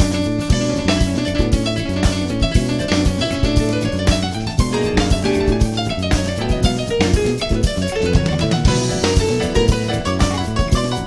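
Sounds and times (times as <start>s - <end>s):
guitar and keyboard music: 0.0s - 11.0s.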